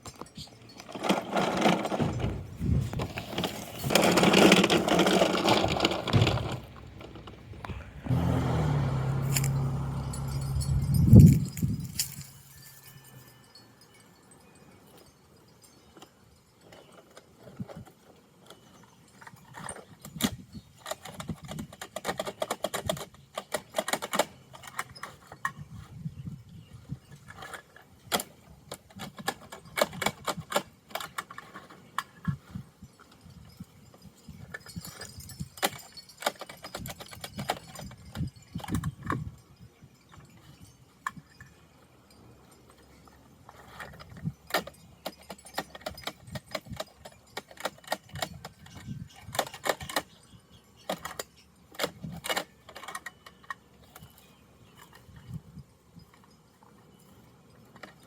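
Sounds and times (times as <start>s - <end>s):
plastic toys clattering: 0.0s - 8.2s, 9.1s - 14.0s, 14.8s - 26.0s, 26.8s - 58.0s
soft low thumps: 2.0s - 3.1s.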